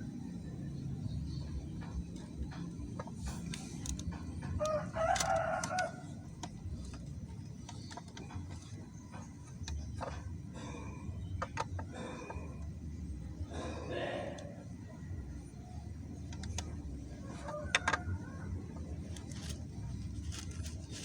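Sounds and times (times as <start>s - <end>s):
steady low rumble: 0.0s - 21.0s
rooster crowing: 4.6s - 6.2s, 17.2s - 18.8s.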